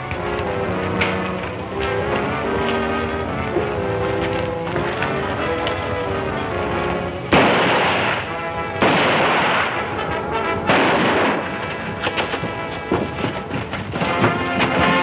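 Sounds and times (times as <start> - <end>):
dramatic orchestral music: 0.0 - 15.0
echoing gunshots: 7.2 - 15.0.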